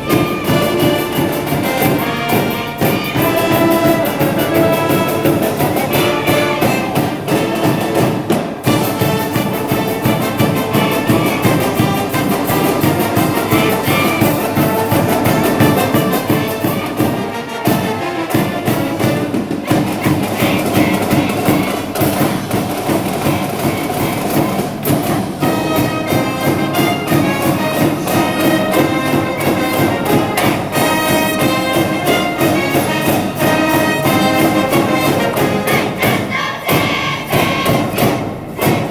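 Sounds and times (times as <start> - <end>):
brass band playing: 0.0 - 38.9
driving drum beat: 0.0 - 38.9.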